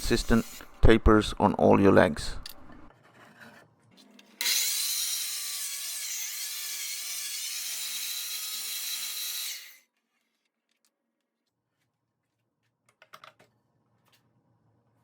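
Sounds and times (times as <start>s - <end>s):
miter saw cutting wood: 0.0s - 0.8s, 4.4s - 9.8s.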